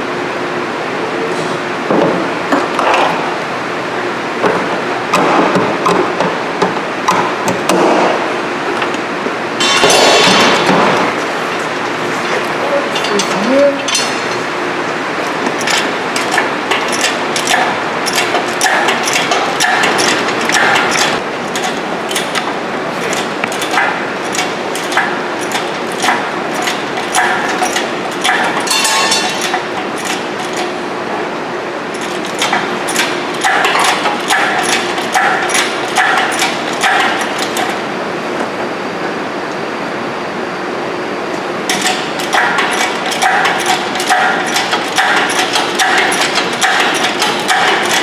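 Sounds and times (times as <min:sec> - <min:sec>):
metal clanks and knocks: 0:09.6 - 0:11.1, 0:23.1 - 0:30.8, 0:41.7 - 0:48.0
ringing metal clang: 0:28.7 - 0:29.4.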